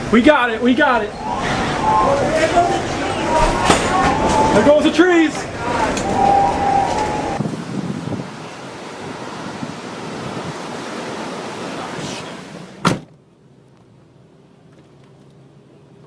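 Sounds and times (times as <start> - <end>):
strong wind on microphone: 1.0 - 10.8.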